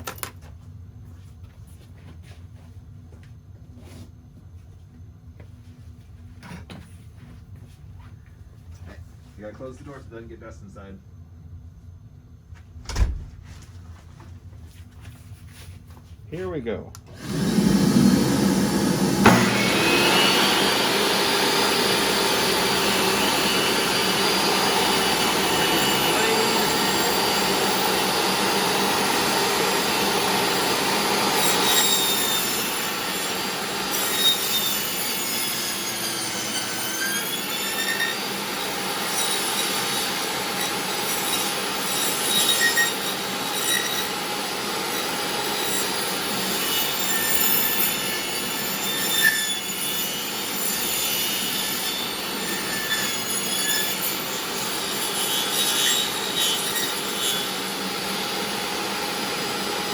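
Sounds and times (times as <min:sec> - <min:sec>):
dust collector running: 0:16.4 - 0:48.8, 0:57.0 - 0:59.9
table saw cutting wood: 0:17.1 - 0:59.9.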